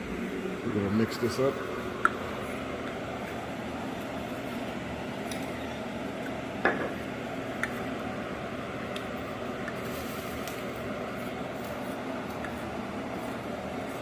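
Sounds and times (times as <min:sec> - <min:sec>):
spoon mixing flour in a bowl: 0:09.0 - 0:14.0.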